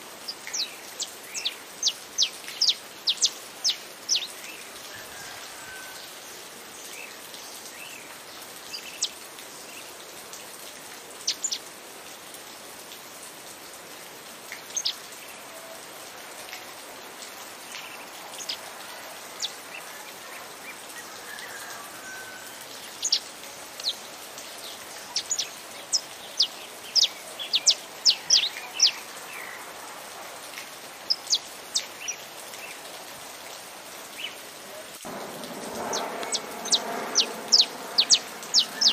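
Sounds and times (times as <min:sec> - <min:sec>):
steady hiss of rain: 0:00.0 - 0:38.9.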